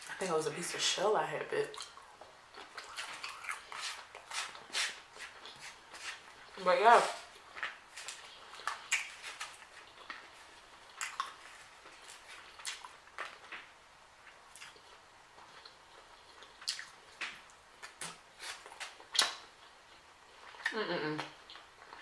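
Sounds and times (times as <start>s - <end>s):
chewing and lip-smacking: 1.7s - 6.6s, 7.4s - 22.0s.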